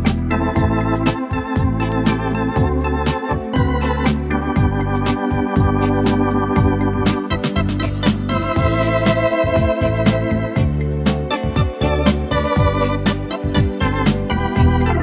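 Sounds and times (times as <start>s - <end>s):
organ music: 0.0s - 15.0s.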